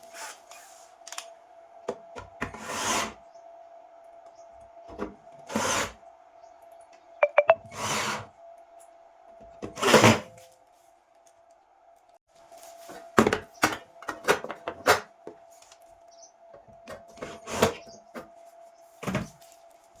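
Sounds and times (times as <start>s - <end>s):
faint steady tone: 7.2s - 7.6s.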